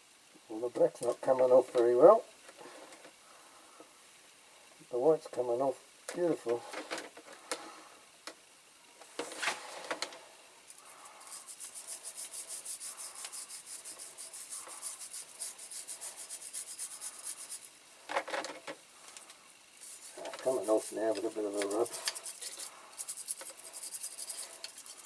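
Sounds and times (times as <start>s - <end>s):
fast scrubbing on metal toy car: 11.2s - 17.8s, 19.8s - 25.0s.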